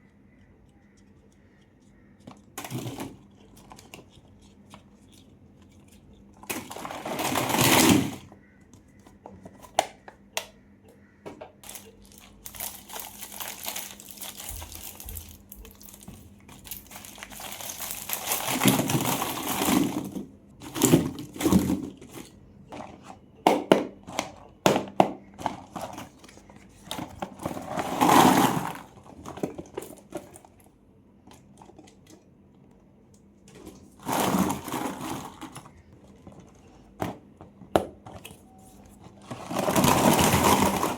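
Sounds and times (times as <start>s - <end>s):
candy wrappers crinkling: 1.4s - 8.3s, 11.6s - 22.4s, 34.0s - 37.0s, 39.3s - 40.9s.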